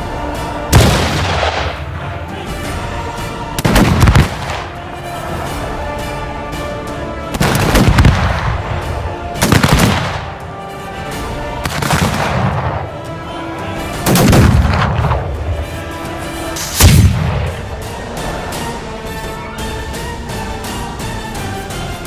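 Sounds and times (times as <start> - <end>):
steady tonal hum: 0.0 - 3.6, 10.2 - 22.0
gunshots with echoing tail: 0.7 - 2.3, 3.6 - 5.0, 7.3 - 10.7, 11.5 - 13.2, 13.9 - 17.9.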